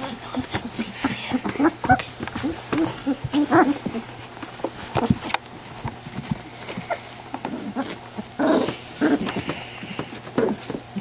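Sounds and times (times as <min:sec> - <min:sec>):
puppies playing and chewing: 0:00.0 - 0:11.0
puppy vocal sound: 0:00.9 - 0:04.2, 0:06.7 - 0:10.8.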